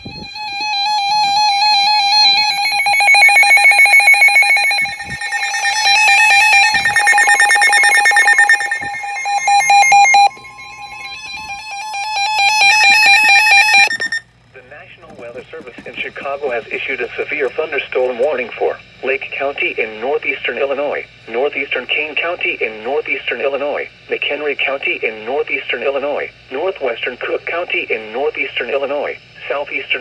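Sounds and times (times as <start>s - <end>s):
steady alarm tone: 0.0s - 14.2s
rapidly pulsing electronic beeping: 0.3s - 14.2s.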